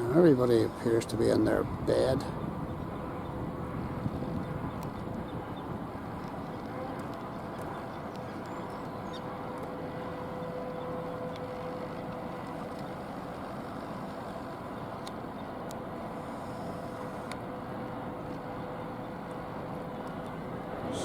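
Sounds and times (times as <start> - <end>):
ship engines low rumble: 0.0 - 21.0
faint ticks: 16.7 - 17.4.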